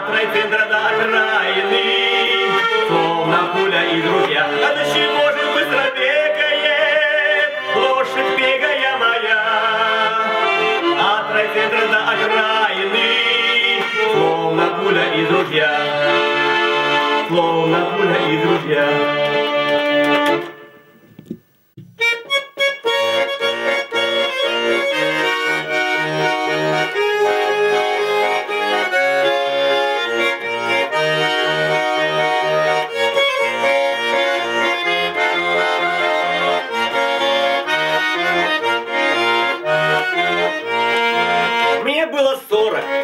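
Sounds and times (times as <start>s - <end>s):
button accordion playing: 0.0s - 43.0s.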